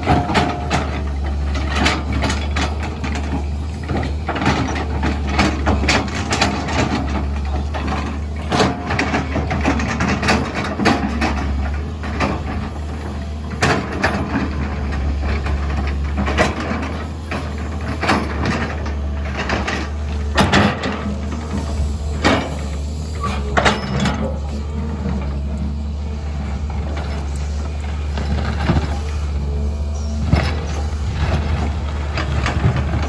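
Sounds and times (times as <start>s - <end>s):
excavator diesel engine running: 0.0s - 33.0s
knocks and clanks: 15.5s - 24.5s.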